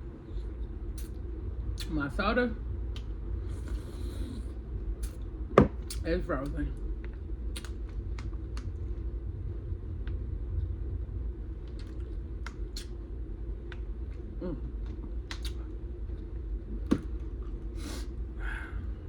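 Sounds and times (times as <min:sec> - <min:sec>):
low steady hum: 0:00.0 - 0:19.0
person chewing food: 0:13.6 - 0:18.2.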